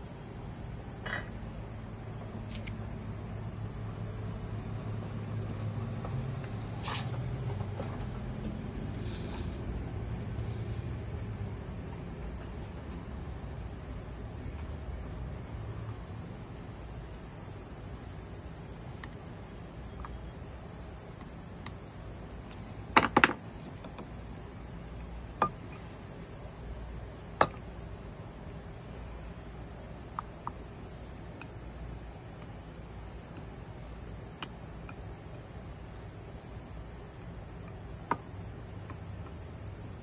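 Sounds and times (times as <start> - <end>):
crickets trilling: 0.0 - 40.0.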